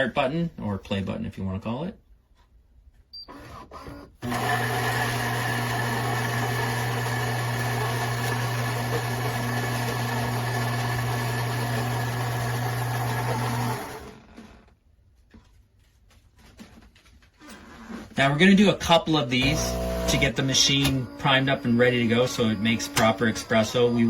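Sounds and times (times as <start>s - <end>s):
coffee grinder grinding beans: 4.2s - 14.6s, 19.4s - 24.0s.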